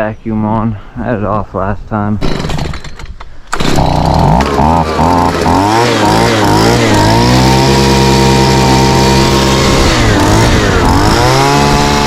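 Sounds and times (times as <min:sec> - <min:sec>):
vacuum motor whining: 0:03.6 - 0:12.0.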